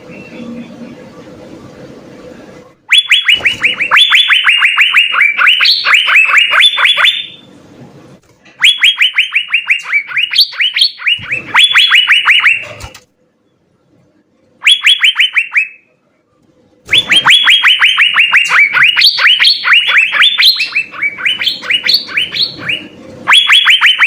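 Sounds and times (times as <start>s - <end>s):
bird whistled song: 2.9s - 7.5s, 8.6s - 12.8s, 16.9s - 24.0s.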